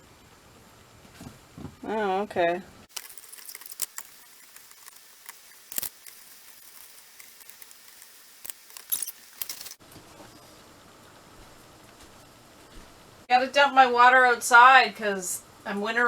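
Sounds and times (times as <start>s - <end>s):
scratching and clicking: 2.9s - 9.8s.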